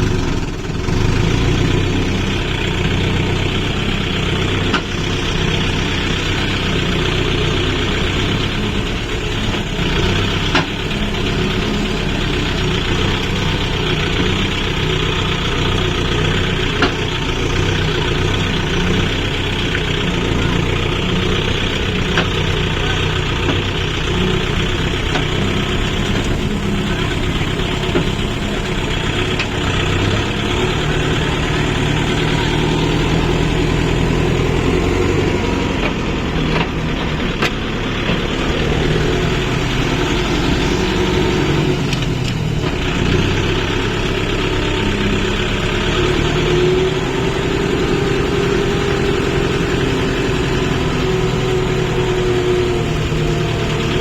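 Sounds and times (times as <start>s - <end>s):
diesel engine running: 0.0s - 54.0s.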